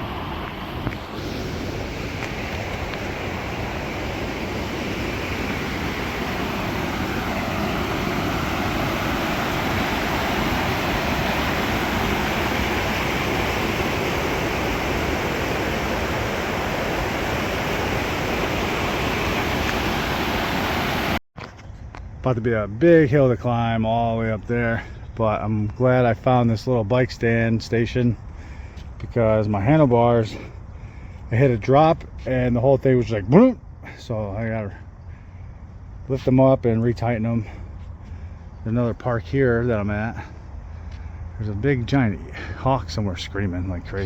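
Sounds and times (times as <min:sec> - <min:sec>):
waterfall roaring: 0:00.0 - 0:21.2.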